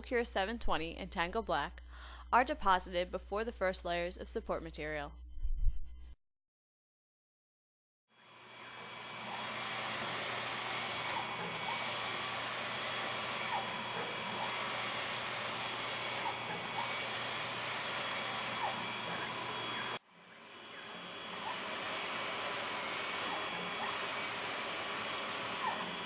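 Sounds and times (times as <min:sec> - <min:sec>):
printer fan whoosh and hum: 0:08.2 - 0:26.0.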